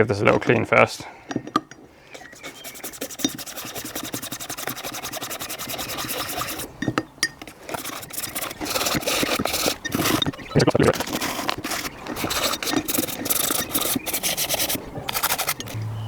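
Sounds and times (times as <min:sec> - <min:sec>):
toothbrush scrubbing filter: 0:02.2 - 0:06.8, 0:07.4 - 0:15.8.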